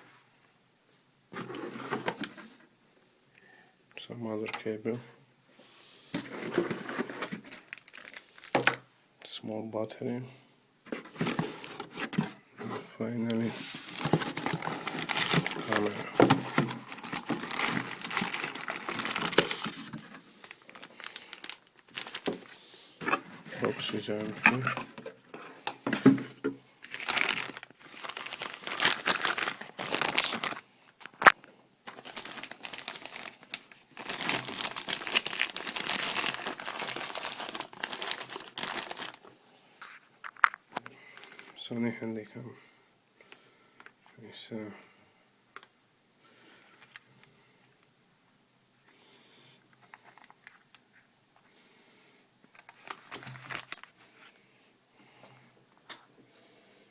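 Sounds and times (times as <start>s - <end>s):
packaging crinkling: 6.2s - 8.8s, 13.6s - 25.2s, 26.8s - 41.5s, 49.9s - 50.9s, 52.5s - 54.0s.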